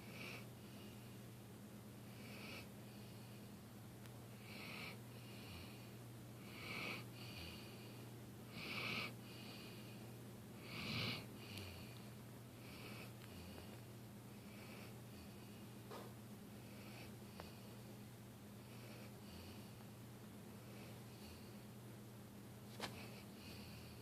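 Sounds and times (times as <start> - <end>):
dog snoring: 0.0 - 1.0, 2.0 - 3.3, 4.4 - 10.0, 10.6 - 12.0, 12.6 - 15.6, 16.6 - 17.7, 18.6 - 19.8, 23.0 - 24.0.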